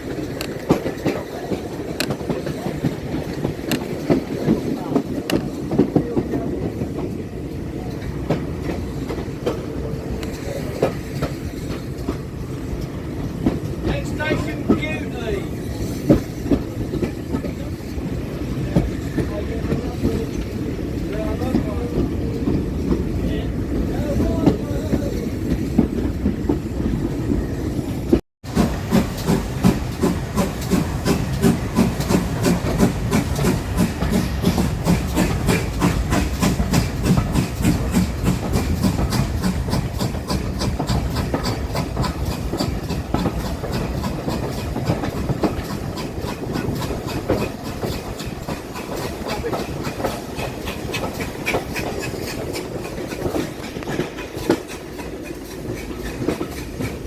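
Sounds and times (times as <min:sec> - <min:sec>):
train rumbling on track: 0:00.0 - 0:57.0
train wheels clattering: 0:00.0 - 0:57.0.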